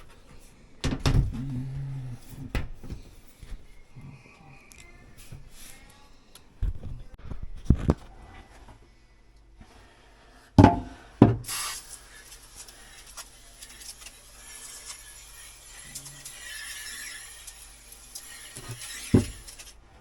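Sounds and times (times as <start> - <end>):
loud thumps: 10.6 - 11.4
knocks and handling noise: 10.6 - 11.5
steady rushing hiss: 11.5 - 19.8.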